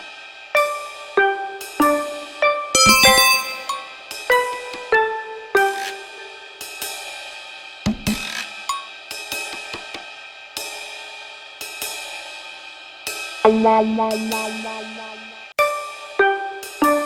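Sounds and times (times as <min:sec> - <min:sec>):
sustained melodic notes: 0:02.8 - 0:03.9.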